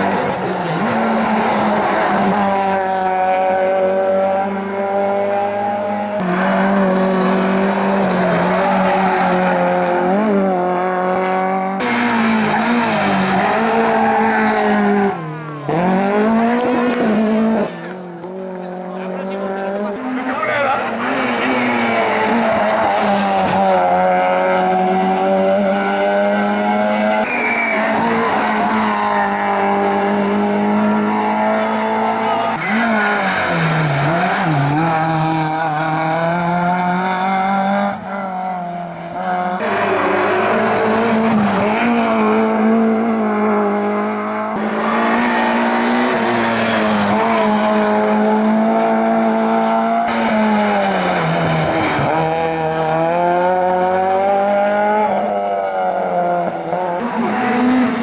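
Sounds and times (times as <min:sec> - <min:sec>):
race car engines revving: 0:00.0 - 0:58.0
tyres squealing: 0:27.2 - 0:28.9.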